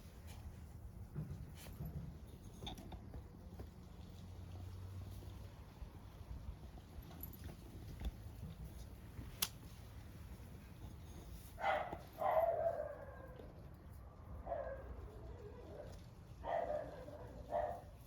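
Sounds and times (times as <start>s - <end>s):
dog barking: 11.6s - 13.4s, 14.4s - 18.0s.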